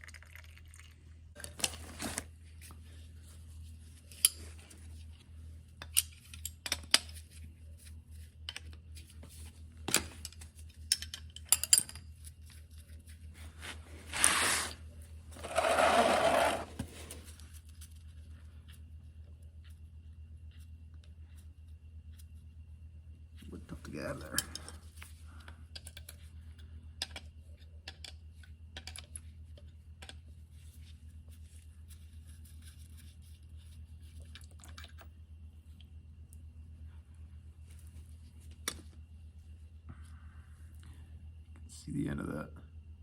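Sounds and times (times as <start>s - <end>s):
steady low hum: 0.4s - 43.0s
hissing or rubbing noises: 13.4s - 17.3s.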